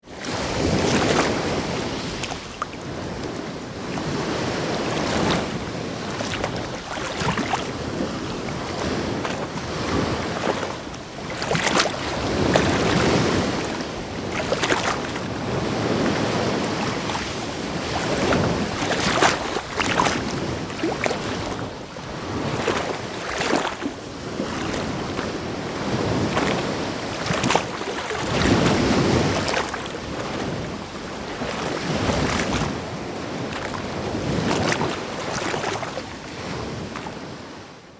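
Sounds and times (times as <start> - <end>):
waves splashing: 0.0 - 37.8
waves breaking against rocks: 0.1 - 37.4.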